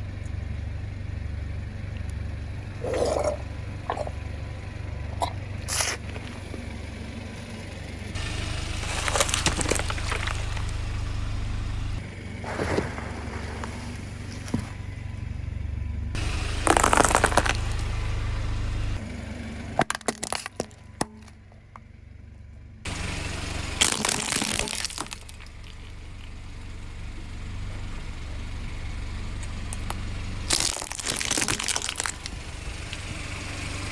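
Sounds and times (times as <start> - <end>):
car engine hum: 0.0 - 33.9
tyres crunching objects: 1.9 - 7.1, 8.2 - 15.4, 16.2 - 19.1, 19.8 - 21.4, 22.9 - 26.6, 29.4 - 33.1
sharp cracks: 16.2 - 19.0, 23.6 - 26.4, 29.4 - 33.1.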